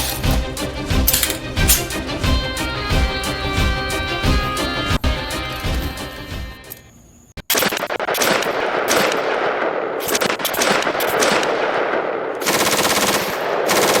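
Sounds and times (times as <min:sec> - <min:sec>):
airsoft guns automatic fire: 0:07.4 - 0:14.0.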